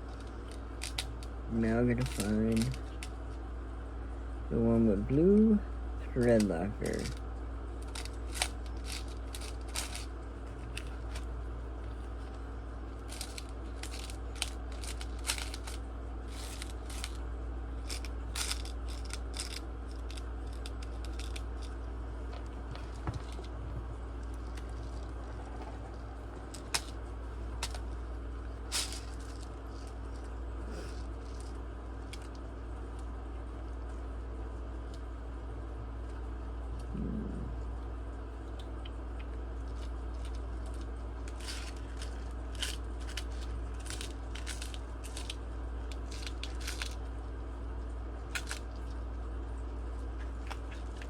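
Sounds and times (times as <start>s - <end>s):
small screws clicking and rattling: 0.0s - 1.4s, 2.0s - 3.4s, 6.9s - 7.2s, 7.8s - 11.3s, 13.0s - 17.2s, 17.8s - 23.5s, 24.2s - 27.0s, 27.6s - 28.0s, 28.7s - 30.3s, 39.7s - 47.1s, 48.3s - 48.9s
steady low hum: 0.0s - 51.0s.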